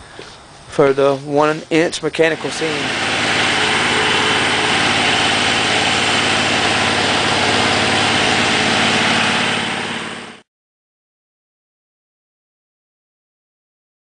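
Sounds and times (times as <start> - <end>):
roll former machine drone: 2.3 - 10.4.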